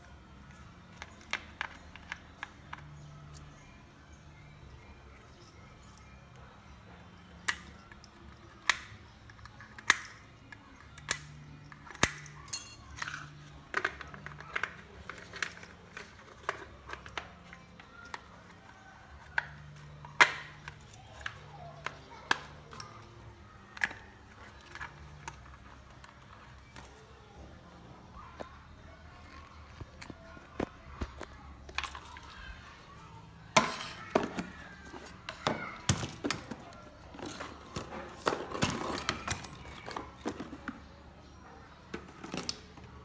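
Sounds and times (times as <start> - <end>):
clicks and taps of small parts: 7.4 - 10.3, 10.9 - 18.3.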